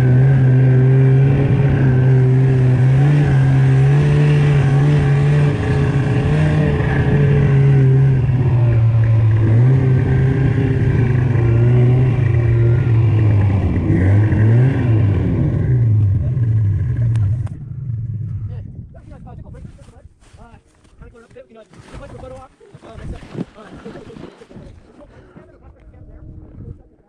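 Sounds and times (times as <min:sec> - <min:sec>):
snowmobile engine running hard: 0:00.0 - 0:18.5.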